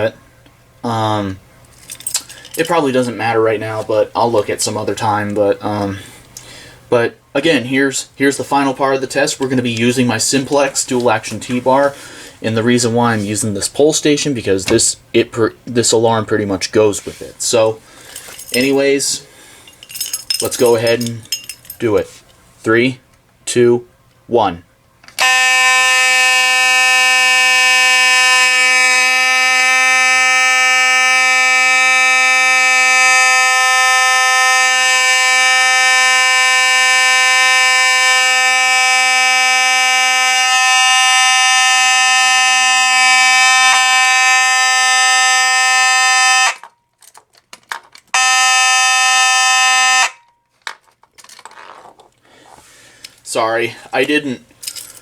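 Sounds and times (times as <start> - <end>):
fire alarm horn buzzing: 25.2 - 46.8, 48.1 - 50.4.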